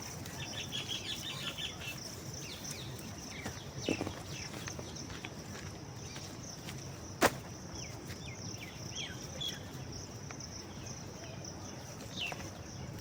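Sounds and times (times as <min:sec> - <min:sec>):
insects droning: 0:00.0 - 0:13.0
bird chirps: 0:00.3 - 0:05.0.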